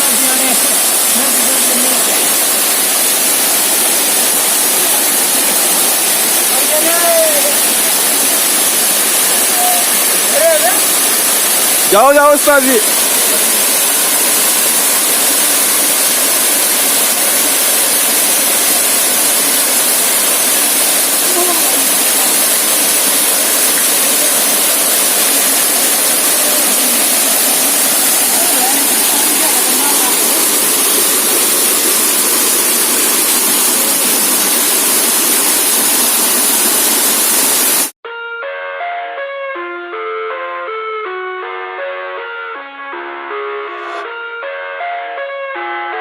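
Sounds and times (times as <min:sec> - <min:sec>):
waterfall rushing: 0:00.0 - 0:38.0
instrumental music: 0:38.0 - 0:46.0.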